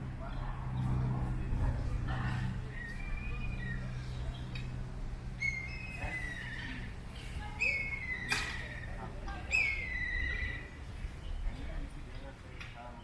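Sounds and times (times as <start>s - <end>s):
high animal calls with trill: 5.4s - 6.9s, 7.5s - 10.8s.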